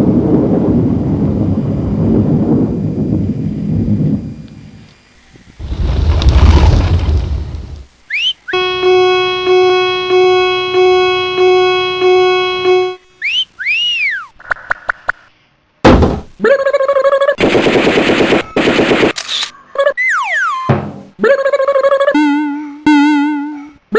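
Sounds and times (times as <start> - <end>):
rapid-fire crackle: 0.1 - 8.0, 17.4 - 19.4
swooping whistle: 8.1 - 14.4
buzzing pulse: 8.5 - 13.2
loud burst: 17.4 - 19.2
quick clicks: 17.8 - 19.6.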